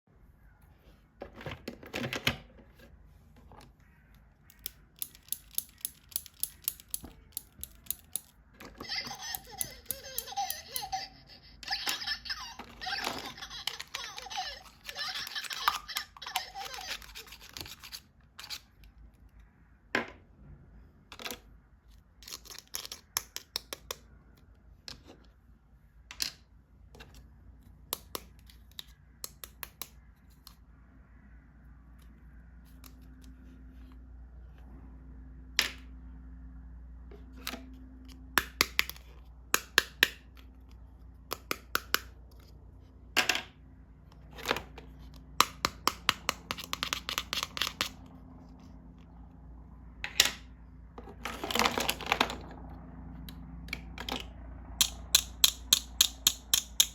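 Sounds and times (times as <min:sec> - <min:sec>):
toys clicking and tapping: 0:04.4 - 0:19.0, 0:22.2 - 0:25.0, 0:27.0 - 0:30.6, 0:37.2 - 0:42.6, 0:43.4 - 0:48.2, 0:51.3 - 0:56.9.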